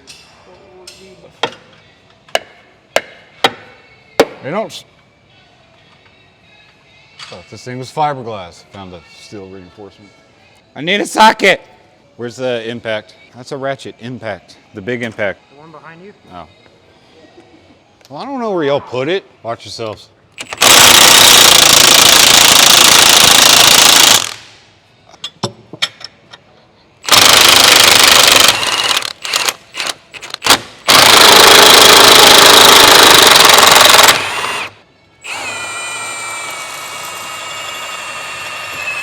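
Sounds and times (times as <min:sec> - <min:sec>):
impact wrench hammering: 0:20.4 - 0:24.4, 0:30.4 - 0:34.7.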